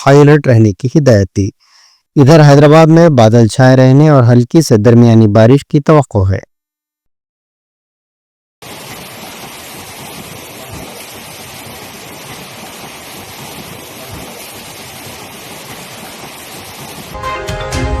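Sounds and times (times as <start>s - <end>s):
water rushing: 8.6s - 18.0s.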